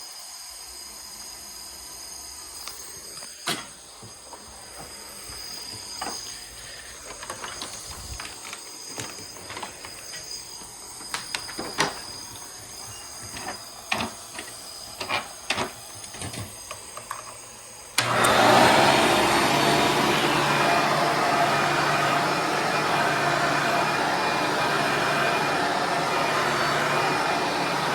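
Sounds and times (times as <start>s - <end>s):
vacuum cleaner motor running: 0.0s - 27.9s
scattered clicks and knocks: 13.2s - 17.4s.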